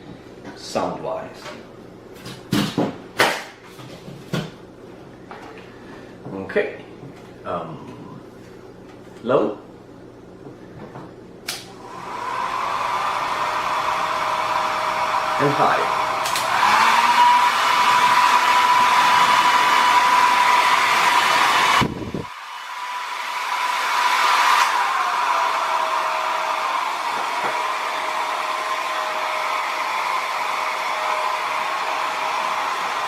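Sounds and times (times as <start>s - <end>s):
hair dryer blowing with whine: 11.5s - 33.0s.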